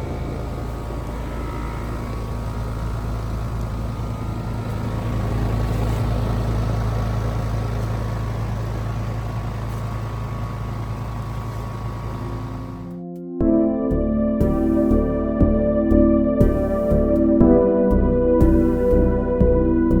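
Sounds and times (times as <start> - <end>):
heat pump compressor hum: 0.0 - 13.0.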